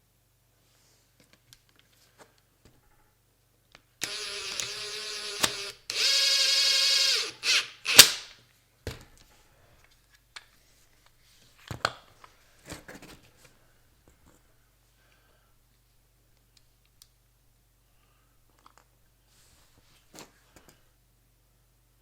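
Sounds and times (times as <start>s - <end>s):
power drill motor whining: 4.0s - 8.2s.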